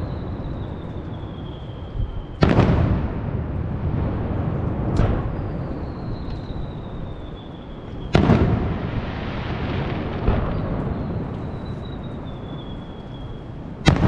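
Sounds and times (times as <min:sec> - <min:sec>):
faint high whistle: 0:00.0 - 0:02.4, 0:05.2 - 0:08.2, 0:10.5 - 0:13.6
fireworks bangs: 0:00.0 - 0:14.0
fireworks rumble and crackle: 0:00.0 - 0:14.0.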